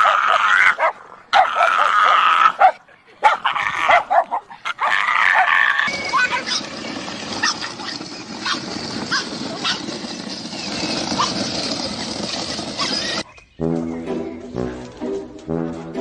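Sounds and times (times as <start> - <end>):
dog yelping: 0.0 - 6.7, 7.3 - 10.0, 11.0 - 11.5, 12.2 - 13.4.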